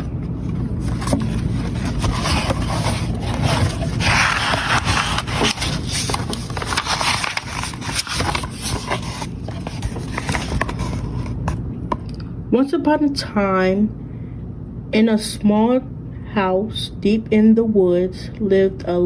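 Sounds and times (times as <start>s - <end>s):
rustling and scraping handling noise: 0.0s - 11.7s.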